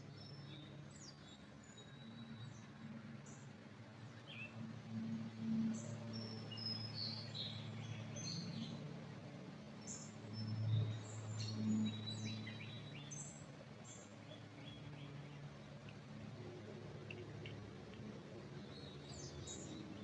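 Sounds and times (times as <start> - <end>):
small birds chirping: 17.0 - 20.0.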